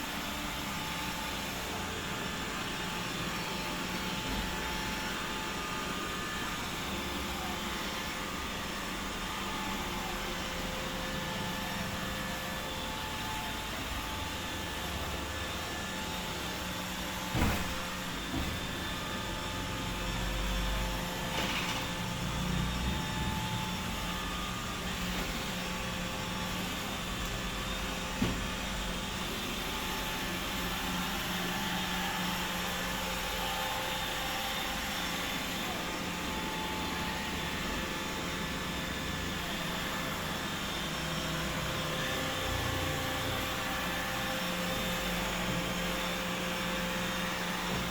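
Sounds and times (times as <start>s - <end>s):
robot vacuum humming: 20.8s - 47.9s.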